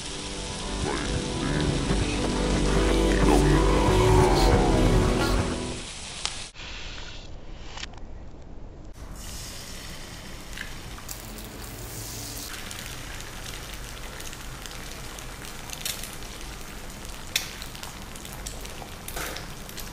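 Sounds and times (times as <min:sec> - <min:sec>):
chicken sizzling in oil: 0:09.1 - 0:19.9
oil crackling pops: 0:12.5 - 0:19.9.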